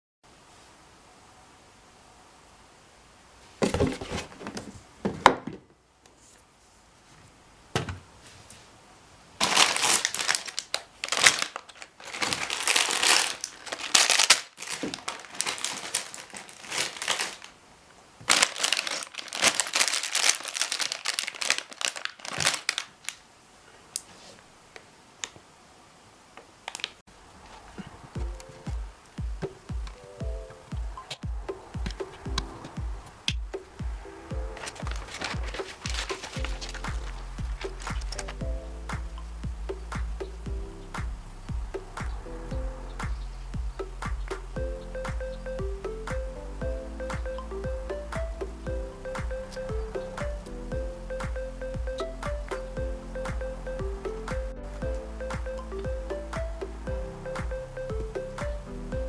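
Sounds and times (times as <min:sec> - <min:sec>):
plastic bags crinkling and tearing: 0:09.4 - 0:17.6, 0:18.2 - 0:23.2, 0:26.7 - 0:27.0, 0:34.6 - 0:38.4.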